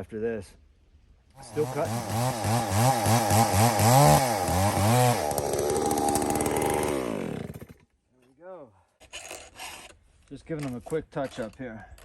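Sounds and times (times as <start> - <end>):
chainsaw cutting log: 1.4 - 7.9.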